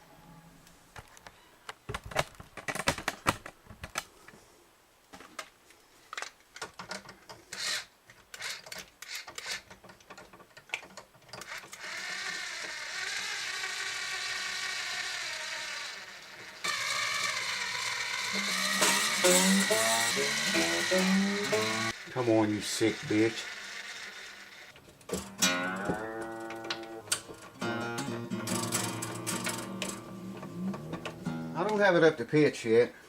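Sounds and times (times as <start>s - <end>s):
guitar string ringing: 18.4s - 22.0s, 25.1s - 31.6s.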